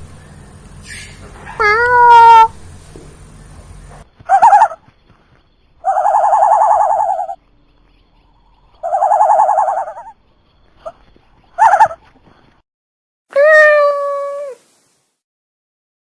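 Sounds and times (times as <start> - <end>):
animal trilling call: 4.3 - 4.9, 5.8 - 7.4, 8.8 - 10.2, 11.6 - 12.0.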